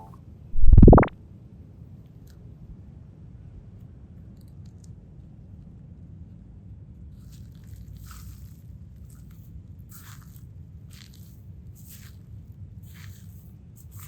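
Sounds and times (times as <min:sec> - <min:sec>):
low hum: 0:00.0 - 0:01.1.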